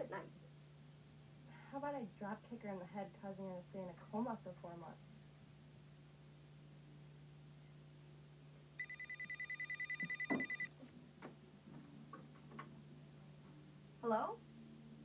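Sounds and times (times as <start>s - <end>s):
electronic telephone ringing: 8.8s - 10.7s
receiver clunk: 10.0s - 10.7s.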